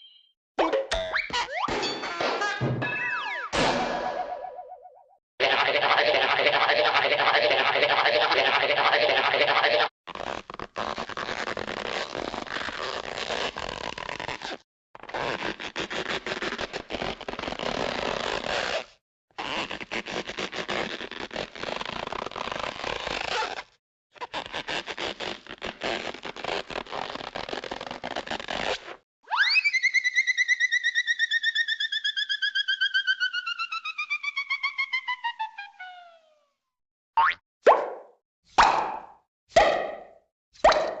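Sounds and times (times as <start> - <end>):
cartoon crackling scraping effects: 5.4 - 14.6.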